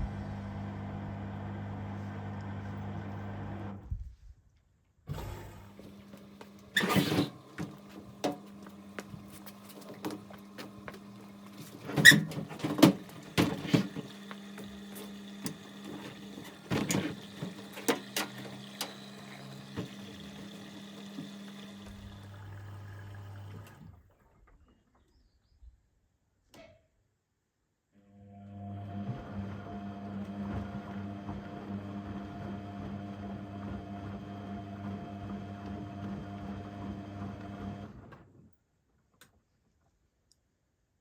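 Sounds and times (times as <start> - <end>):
washing machine motor hum: 0.0 - 3.8, 5.1 - 24.1, 28.1 - 38.0.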